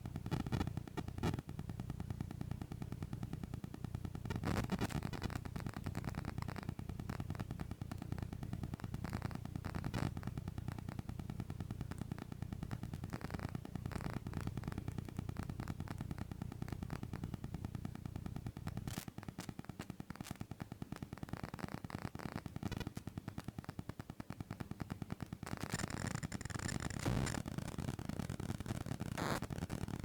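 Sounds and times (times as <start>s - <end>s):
rapid even ticking interference: 24.6s - 30.0s.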